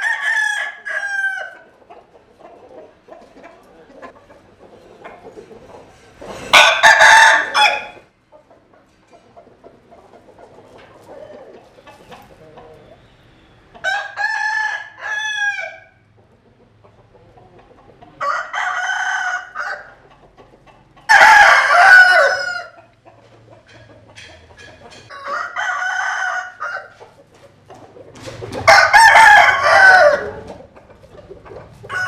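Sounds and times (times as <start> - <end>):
rooster crowing: 0.0 - 1.6, 6.5 - 8.1, 13.8 - 16.0, 18.2 - 20.0, 21.1 - 22.8, 25.1 - 27.0, 28.6 - 30.5.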